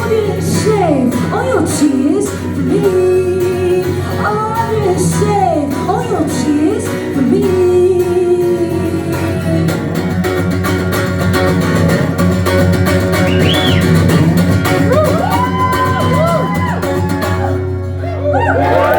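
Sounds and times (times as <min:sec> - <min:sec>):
live rock band playing: 0:00.0 - 0:18.9
audience whooping: 0:13.2 - 0:14.2, 0:14.8 - 0:18.9.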